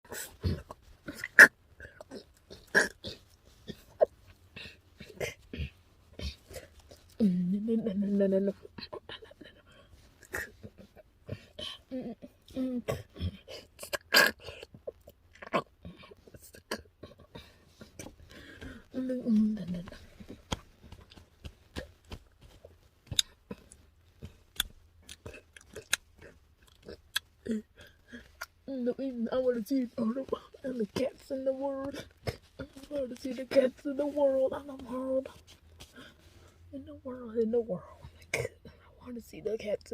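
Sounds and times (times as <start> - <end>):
frog hiccup-like calls: 1.1 - 3.2.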